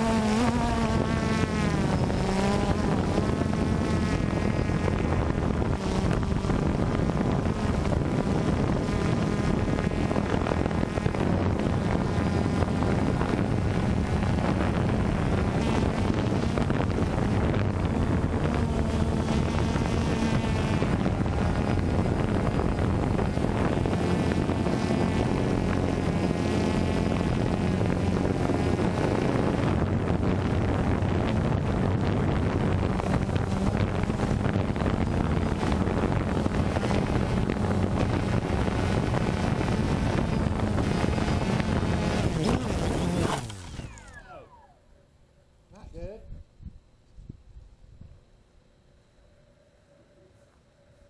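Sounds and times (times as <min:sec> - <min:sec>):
wind rush on microphone: 0:00.0 - 0:44.6, 0:45.8 - 0:48.3
drone motors buzzing: 0:00.0 - 0:46.1.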